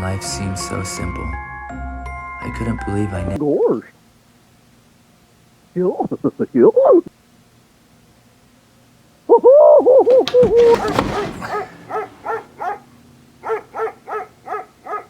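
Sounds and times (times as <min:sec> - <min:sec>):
crash: 0:10.0 - 0:12.8.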